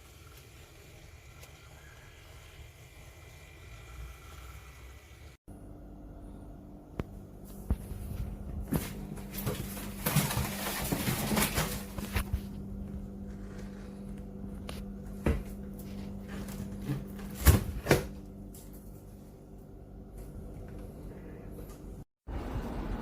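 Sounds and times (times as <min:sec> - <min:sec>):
steady low hum: 0:05.5 - 0:23.0.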